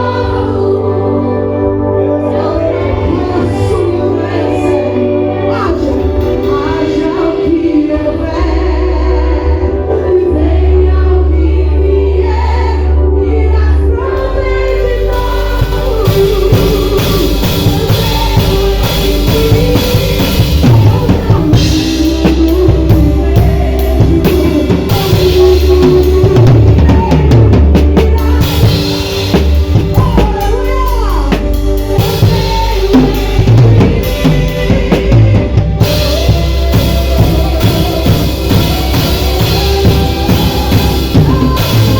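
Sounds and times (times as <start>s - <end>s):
loud music: 0.0s - 41.9s
drum kit playing: 5.4s - 8.2s, 14.2s - 41.9s.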